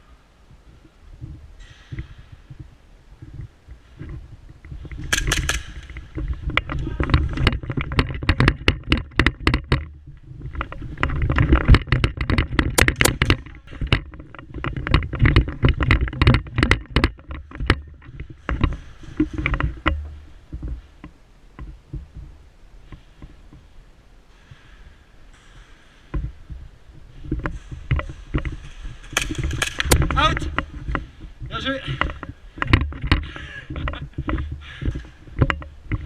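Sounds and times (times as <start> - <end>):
airsoft guns firing: 5.1 - 6.0, 29.0 - 30.1.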